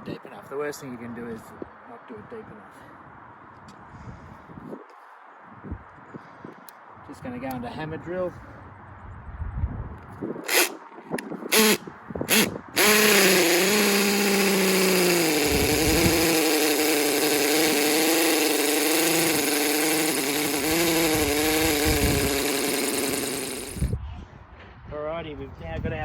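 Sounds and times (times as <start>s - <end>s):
hammer drill boring into concrete: 10.5s - 10.8s, 11.5s - 24.0s.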